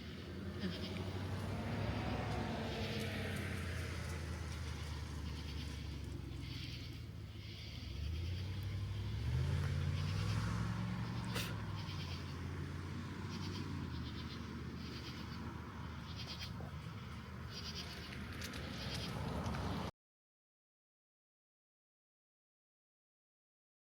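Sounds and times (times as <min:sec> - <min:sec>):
passing vehicle engine hum: 0:00.0 - 0:19.9
katydids calling: 0:04.0 - 0:12.6, 0:13.2 - 0:19.2.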